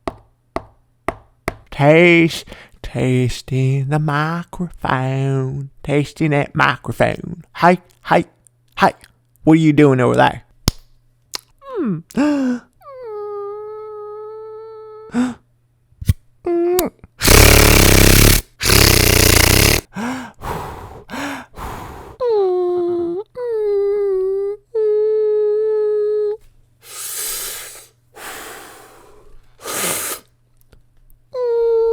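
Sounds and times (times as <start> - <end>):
person humming whining tones: 16.4 - 19.9, 22.2 - 26.4, 31.4 - 31.9
person making breathy blasts: 17.2 - 22.2, 26.8 - 30.3.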